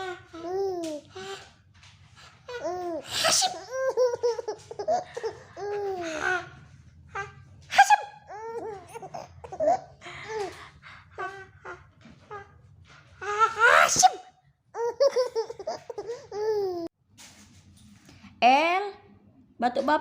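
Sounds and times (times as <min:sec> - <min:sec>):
baby giggling: 0:02.6 - 0:06.5, 0:08.3 - 0:10.6, 0:14.8 - 0:16.9.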